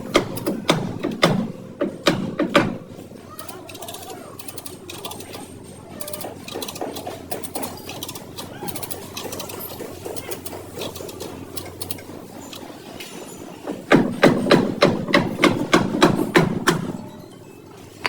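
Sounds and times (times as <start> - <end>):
hammer on sheet metal: 0.0 - 2.9.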